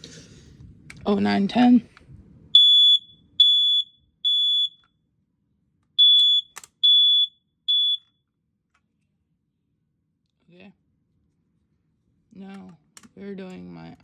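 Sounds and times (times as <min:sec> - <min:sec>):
smoke alarm beeping: 0:02.5 - 0:04.9, 0:06.0 - 0:08.2.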